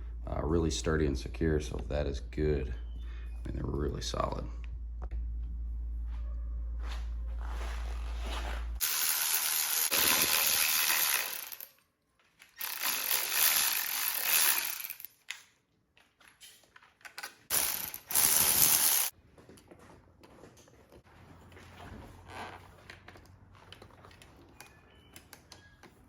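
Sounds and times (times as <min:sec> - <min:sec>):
hand ratchet clicking: 0:08.8 - 0:11.7, 0:12.6 - 0:15.2, 0:17.5 - 0:19.1.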